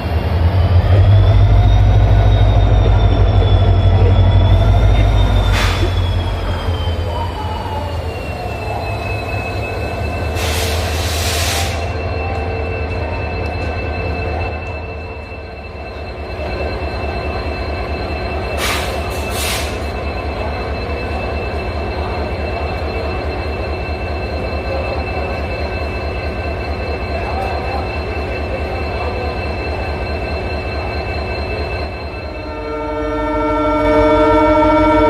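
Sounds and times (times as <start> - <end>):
diesel locomotive engine throbbing: 0.0 - 35.0
air hissing: 10.3 - 11.9.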